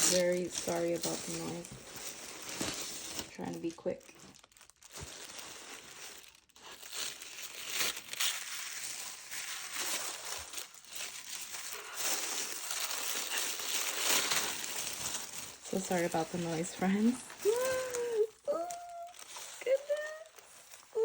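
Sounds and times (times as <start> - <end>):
plastic bag crinkling: 0.0 - 21.0.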